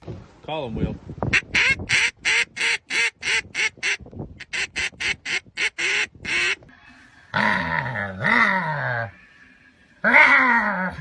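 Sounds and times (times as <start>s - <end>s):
duck quacking: 1.3s - 6.6s.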